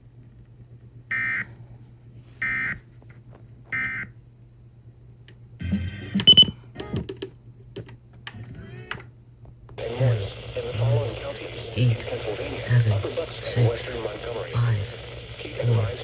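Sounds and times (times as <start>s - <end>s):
low steady hum: 0.0s - 16.0s
loud clicks and crackle: 9.8s - 16.0s.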